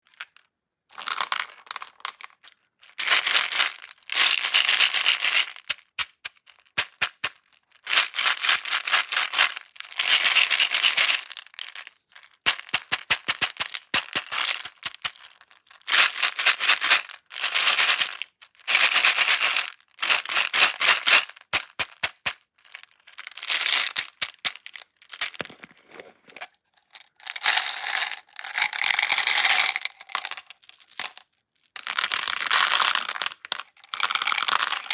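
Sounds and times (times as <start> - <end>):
plastic beads pouring onto trays: 26.4 - 34.9.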